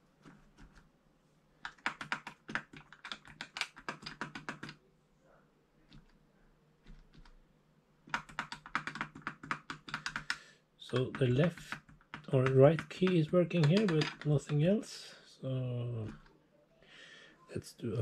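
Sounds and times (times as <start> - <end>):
keyboard key switches clicking: 8.1 - 14.5.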